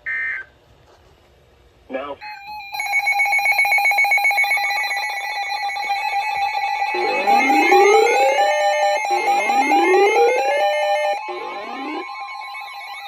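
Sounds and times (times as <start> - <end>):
two-tone alert tone: 4.4 - 13.0
rising synthesized sweep: 6.6 - 13.0.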